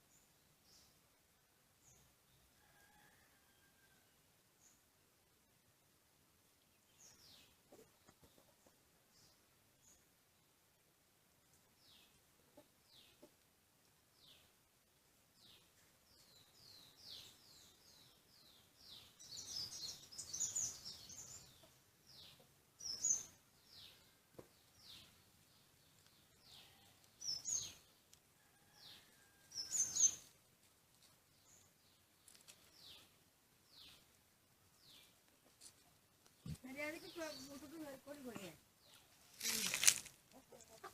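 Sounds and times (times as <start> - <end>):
birds chirping: 15.4 - 30.4, 31.2 - 40.9.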